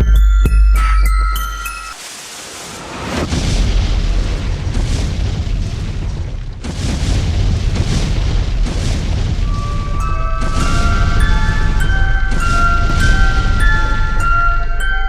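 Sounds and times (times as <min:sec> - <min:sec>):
deep booming rumble: 0:03.2 - 0:15.0.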